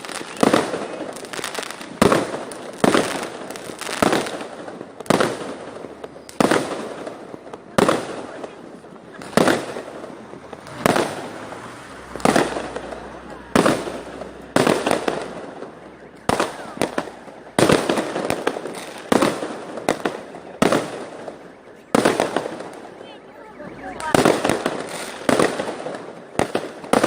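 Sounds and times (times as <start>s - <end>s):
fireworks bursting with echo: 0.0s - 27.0s.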